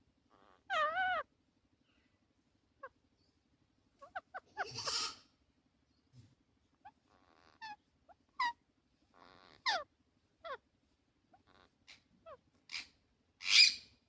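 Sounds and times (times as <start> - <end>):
parakeets chirping: 0.3 - 1.2, 4.0 - 5.2, 6.8 - 8.6, 9.2 - 10.6, 11.4 - 13.9
parakeet harsh screech: 4.1 - 5.2, 12.7 - 13.8.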